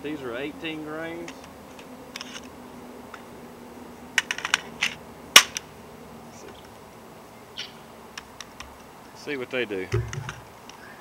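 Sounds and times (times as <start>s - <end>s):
metallic clicks of cartridges: 10.0s - 10.5s.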